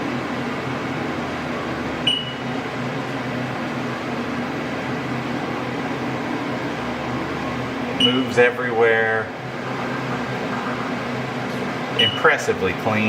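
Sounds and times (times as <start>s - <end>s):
milling machine humming: 0.0s - 13.0s
short high beep: 2.0s - 2.4s, 8.0s - 8.3s.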